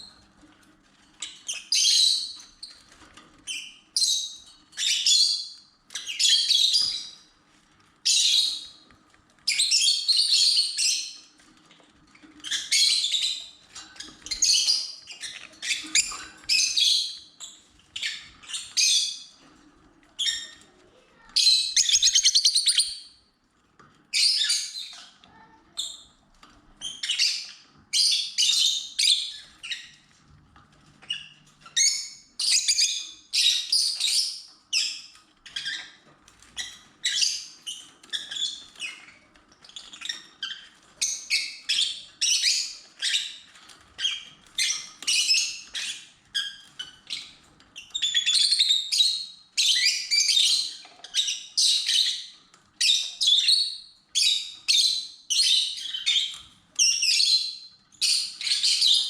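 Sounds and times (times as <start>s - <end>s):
lovebirds chirping: 21.2s - 23.2s.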